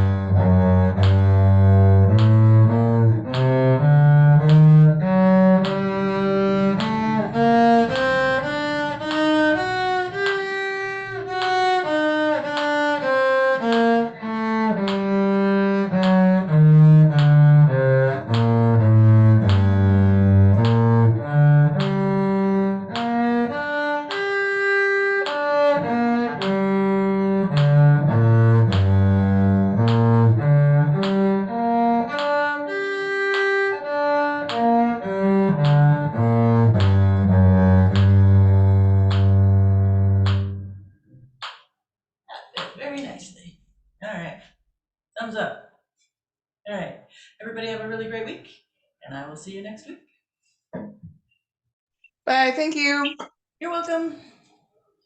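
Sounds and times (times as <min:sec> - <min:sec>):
cello playing a scale: 0:00.0 - 0:41.6.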